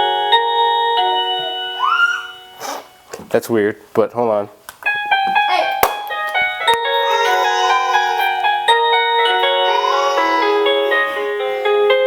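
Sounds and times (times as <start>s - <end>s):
electronic doorbell chime melody: 0.0s - 2.6s, 6.0s - 12.0s.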